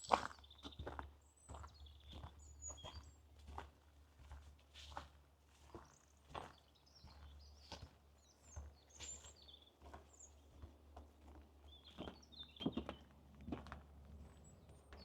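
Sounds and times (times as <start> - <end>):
footsteps on a forest path: 0.0 - 15.0
small birds chirping: 1.5 - 3.2.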